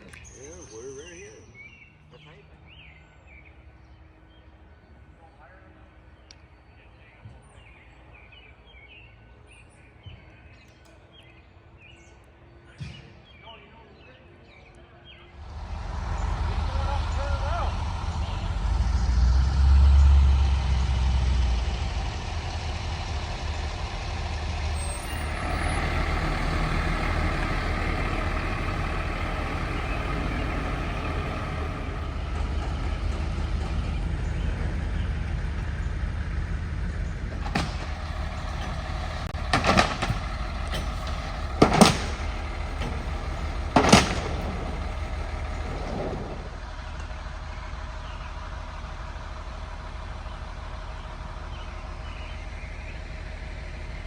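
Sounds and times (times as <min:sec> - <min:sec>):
heavy diesel engine running: 0:15.1 - 0:54.0.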